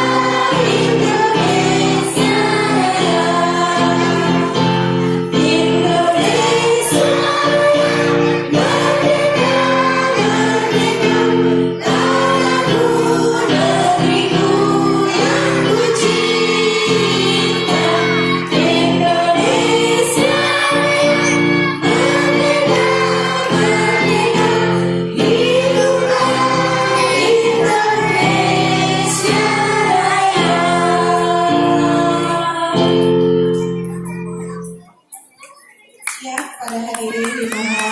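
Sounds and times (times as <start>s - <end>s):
children's choir singing: 0.0s - 37.9s.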